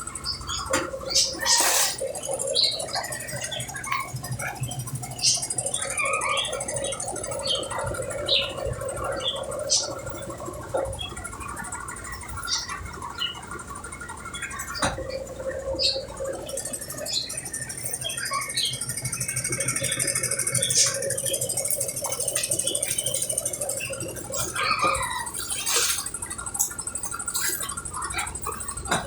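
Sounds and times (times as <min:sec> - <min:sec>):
washing machine humming: 0:00.0 - 0:29.0.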